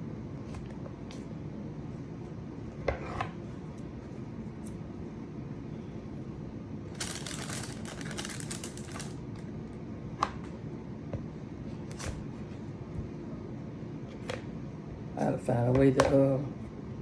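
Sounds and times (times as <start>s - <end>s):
steady low hum: 0.0s - 17.0s
crinkling and rustling: 7.0s - 9.5s.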